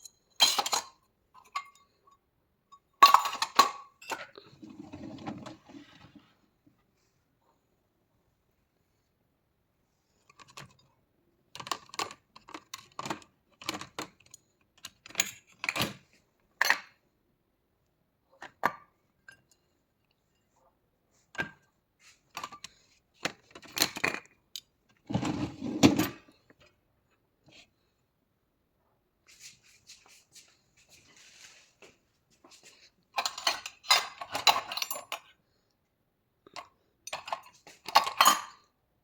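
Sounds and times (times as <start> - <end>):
dishes clattering in dishwasher racks: 37.2 - 38.6.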